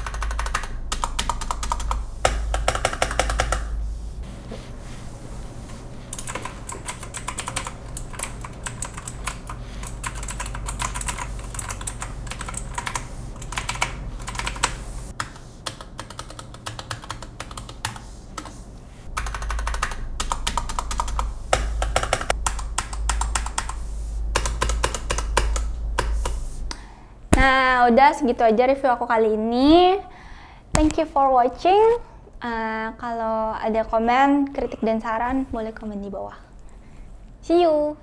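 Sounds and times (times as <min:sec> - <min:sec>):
mechanical keyboard typing: 0:00.0 - 0:03.7, 0:06.1 - 0:18.5, 0:19.2 - 0:23.8, 0:24.4 - 0:26.4.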